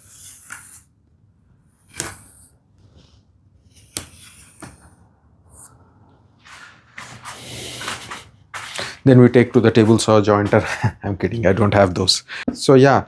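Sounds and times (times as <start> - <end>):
wood scraping: 6.4 - 12.1.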